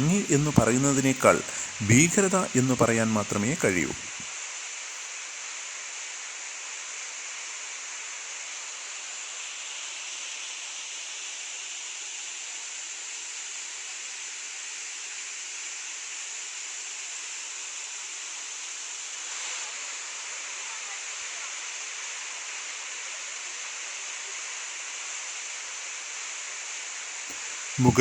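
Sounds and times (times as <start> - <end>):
waterfall rushing: 0.0 - 4.2.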